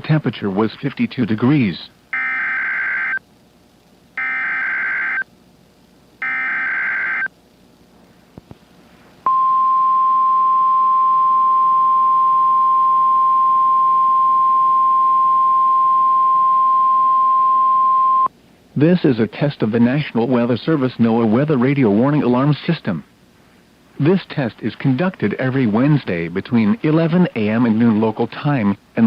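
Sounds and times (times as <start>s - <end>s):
buzzy warbling digital data bursts: 2.1s - 3.2s, 4.2s - 5.2s, 6.2s - 7.3s
steady warning alarm tone: 2.1s - 3.2s, 4.2s - 5.2s, 6.2s - 7.3s.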